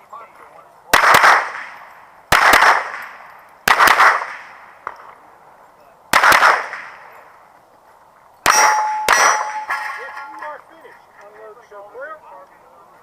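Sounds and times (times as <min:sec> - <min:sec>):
gunshots echoing: 0:00.9 - 0:05.2, 0:06.1 - 0:07.2, 0:08.4 - 0:10.4
steel target ringing: 0:08.4 - 0:10.6.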